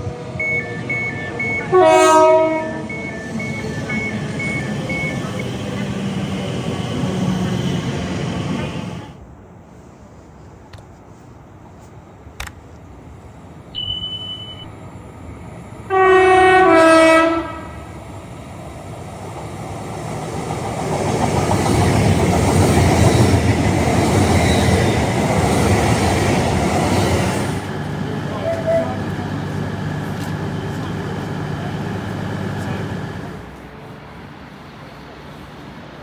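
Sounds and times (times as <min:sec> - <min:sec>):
train rumbling past: 0:00.0 - 0:36.0
train two-tone horn: 0:01.6 - 0:03.5, 0:15.9 - 0:17.8, 0:28.0 - 0:33.4.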